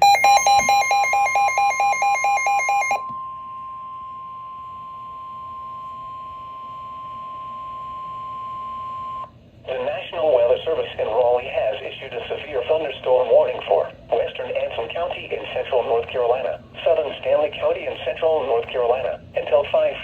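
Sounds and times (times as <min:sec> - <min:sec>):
steady high alarm tone: 0:00.0 - 0:09.3.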